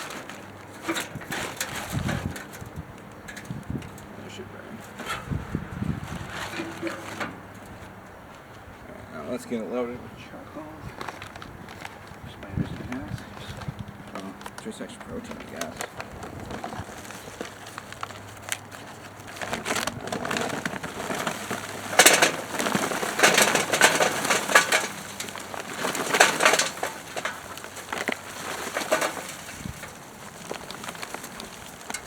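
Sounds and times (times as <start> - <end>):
charcoal pouring into grill: 0.0 - 7.8, 14.2 - 32.0.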